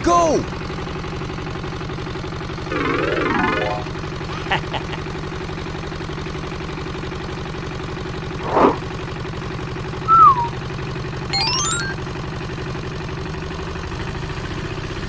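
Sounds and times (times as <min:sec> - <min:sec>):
rising electronic tones: 0:02.7 - 0:04.0, 0:10.1 - 0:10.6, 0:11.3 - 0:12.0
falling whistle-like tone: 0:10.1 - 0:10.6, 0:11.3 - 0:12.0.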